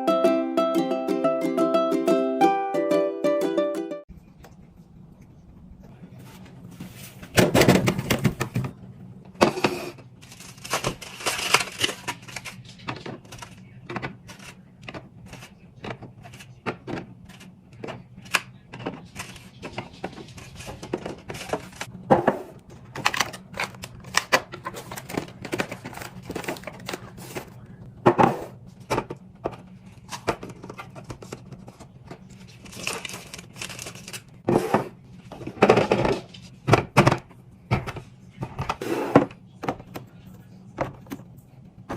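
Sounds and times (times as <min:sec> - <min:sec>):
faint low hum: 0:04.1 - 0:41.9
packaging crinkling: 0:10.2 - 0:13.6, 0:32.3 - 0:34.4.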